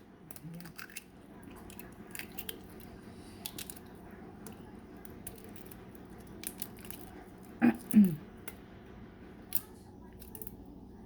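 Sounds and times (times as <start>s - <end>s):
eggshell clicking and crackling: 0.1s - 10.8s.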